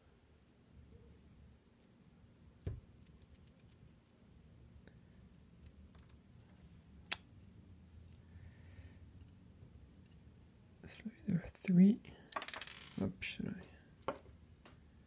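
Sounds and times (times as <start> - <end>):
small metal parts clicking: 3.0 - 3.8, 5.3 - 6.2.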